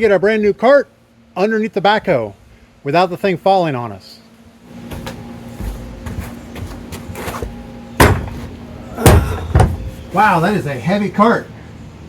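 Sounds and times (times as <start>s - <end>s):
loud wooden knocks: 8.0s - 8.4s, 9.0s - 9.9s.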